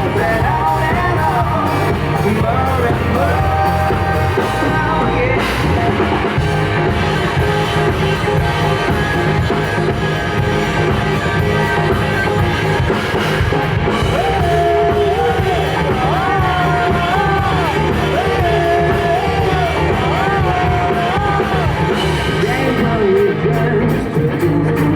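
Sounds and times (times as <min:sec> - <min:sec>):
person singing: 0:00.0 - 0:07.2, 0:13.9 - 0:24.9
live rock band playing: 0:00.0 - 0:24.9.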